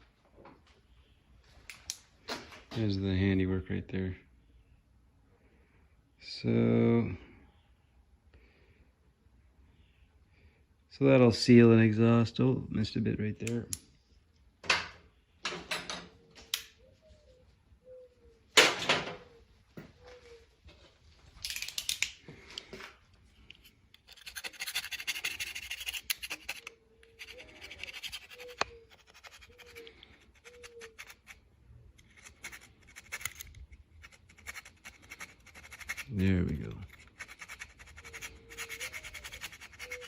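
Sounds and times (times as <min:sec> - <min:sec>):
scraping gasket off metal: 0:23.6 - 0:31.4.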